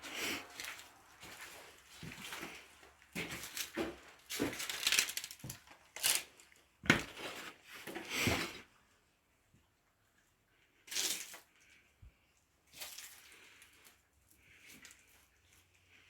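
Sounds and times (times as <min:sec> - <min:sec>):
footsteps crunching over debris: 0:00.0 - 0:08.4.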